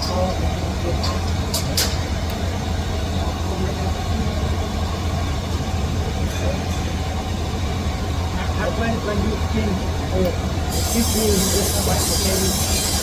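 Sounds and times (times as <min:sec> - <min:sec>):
metal lathe humming: 0:08.8 - 0:13.0.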